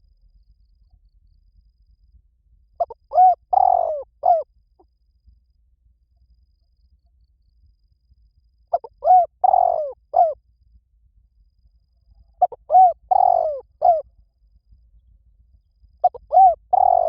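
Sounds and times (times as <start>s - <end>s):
dove cooing: 2.8s - 4.5s, 8.7s - 10.4s, 12.4s - 14.1s, 16.0s - 17.0s.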